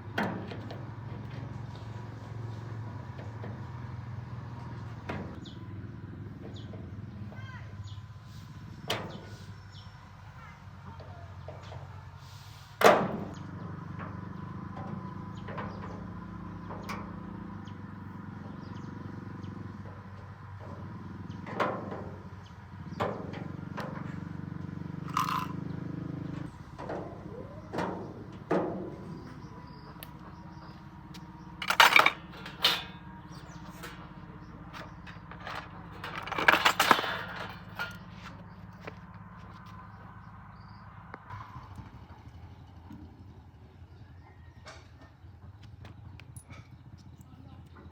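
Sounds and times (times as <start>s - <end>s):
sharp knocks and clanks: 12.8s - 17.5s, 19.8s - 24.4s, 26.4s - 39.0s.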